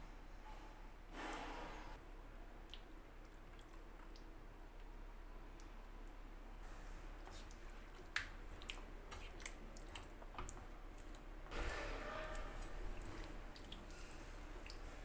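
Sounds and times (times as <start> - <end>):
curry squelching in a pan: 5.6 - 15.0.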